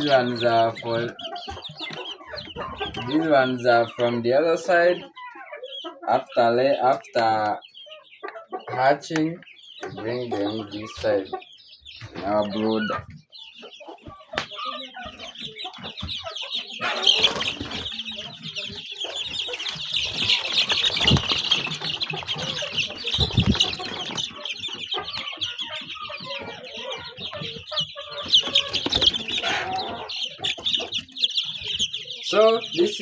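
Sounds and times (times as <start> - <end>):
chicks peeping and clucking: 0.0 - 33.0
dull low thumps: 21.0 - 24.2.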